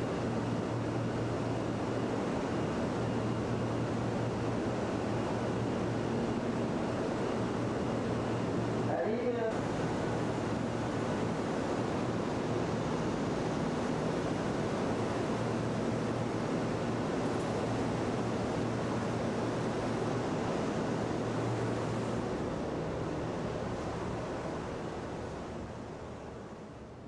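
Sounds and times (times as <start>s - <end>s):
train cabin running noise: 6.8s - 26.4s.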